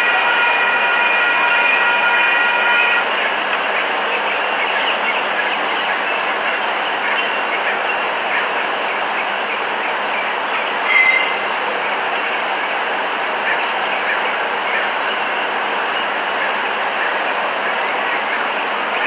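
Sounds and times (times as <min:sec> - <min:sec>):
train wheels on rail: 0:00.0 - 0:19.0
wheel squeal: 0:10.9 - 0:11.4.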